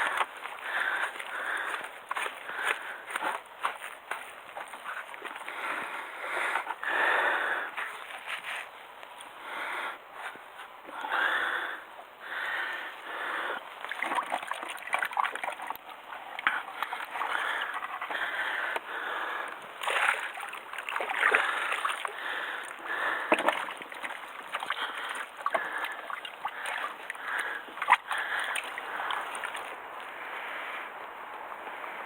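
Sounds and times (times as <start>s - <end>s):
water sloshing against hull: 0.0s - 6.0s, 13.8s - 18.8s, 19.8s - 29.8s.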